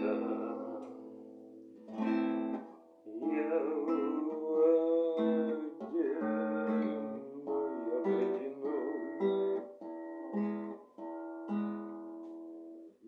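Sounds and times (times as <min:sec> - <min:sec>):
man singing: 0:00.0 - 0:01.2, 0:03.1 - 0:10.7
acoustic guitar strumming chords: 0:00.0 - 0:13.0.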